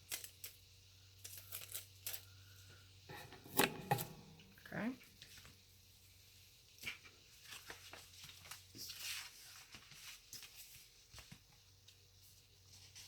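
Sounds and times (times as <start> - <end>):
paper rustling: 6.8 - 11.4.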